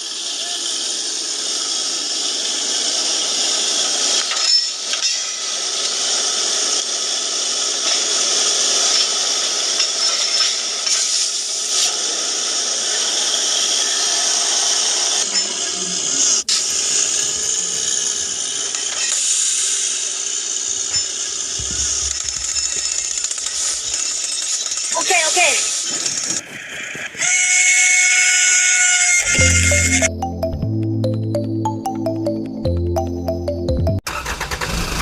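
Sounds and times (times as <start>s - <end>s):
small electric motor whirring: 0.0s - 30.1s.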